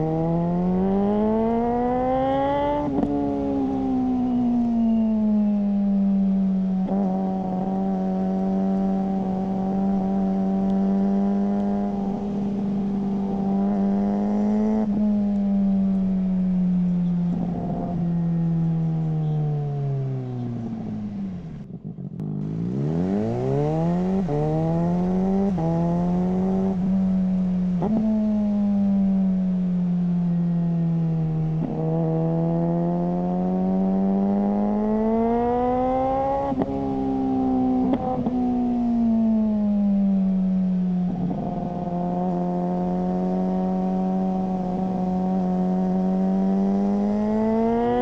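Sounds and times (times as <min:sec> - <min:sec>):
motorcycle engine revving: 0:00.0 - 0:48.0.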